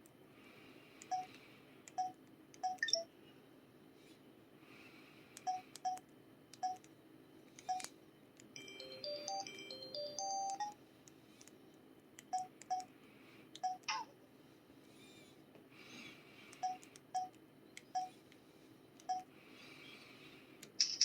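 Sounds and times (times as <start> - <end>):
phone keypad beeps with clicks: 1.1 - 1.3, 1.9 - 3.1, 5.4 - 6.0, 6.6 - 6.9, 7.6 - 7.9, 8.6 - 10.8, 12.3 - 12.9, 13.6 - 14.0, 16.6 - 18.2
electronic phone jingle: 8.6 - 10.7.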